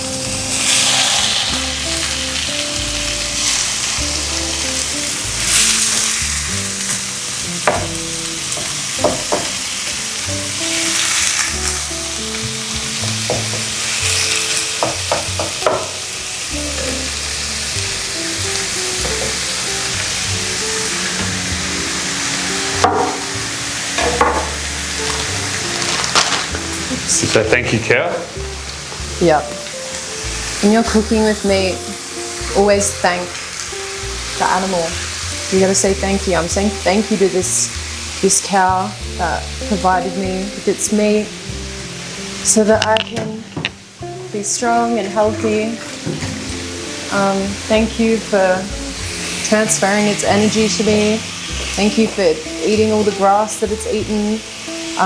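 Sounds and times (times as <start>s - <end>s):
beef sizzling in a pan: 0.0s - 55.0s
utensil scraping a pan: 0.5s - 2.1s.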